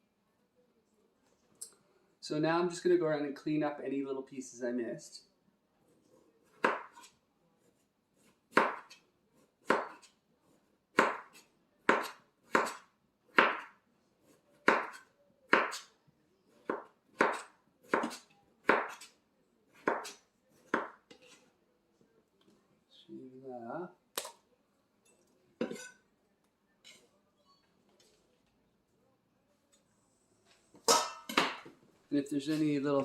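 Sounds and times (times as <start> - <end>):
knife chopping melon rind: 6.4 - 7.1, 8.2 - 9.0, 9.6 - 10.2, 10.9 - 15.9, 16.6 - 21.4.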